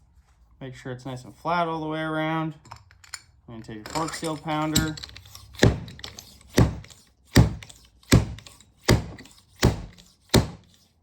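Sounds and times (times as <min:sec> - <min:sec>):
seal driver striking metal: 0:04.7 - 0:10.8.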